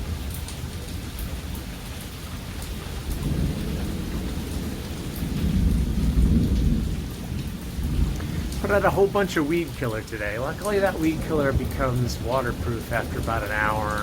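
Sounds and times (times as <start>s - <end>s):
heavy rain falling: 0.0s - 14.0s
thunder rolling: 3.0s - 14.0s.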